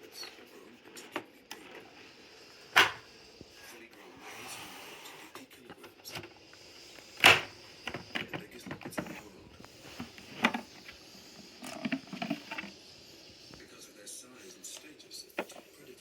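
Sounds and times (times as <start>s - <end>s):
objects clicking and knocking: 7.1s - 13.6s.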